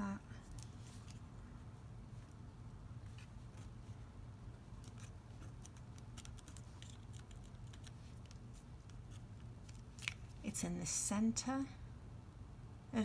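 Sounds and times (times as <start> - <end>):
low steady hum: 0.0 - 13.0
card clicking and rustling: 4.8 - 10.4.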